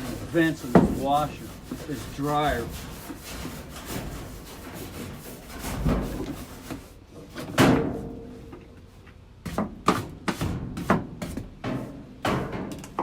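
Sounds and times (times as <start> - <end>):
hands scraping and rustling: 0.0 - 7.0.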